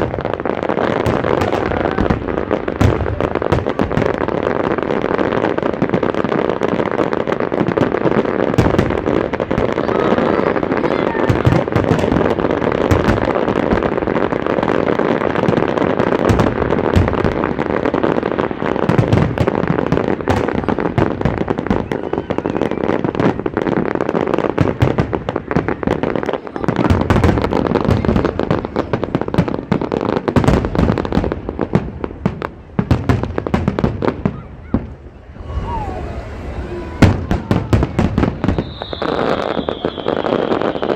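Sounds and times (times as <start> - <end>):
fireworks bangs and crackling: 0.0 - 40.9.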